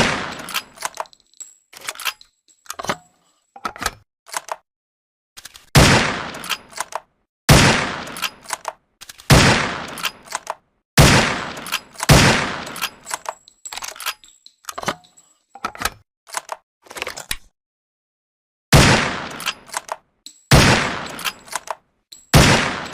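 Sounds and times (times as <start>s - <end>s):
rifle action clicks: 6.3s - 7.1s, 8.1s - 9.3s, 19.3s - 20.0s, 21.0s - 21.8s
rifle shots with ringing tail: 20.5s - 21.3s, 22.4s - 22.9s.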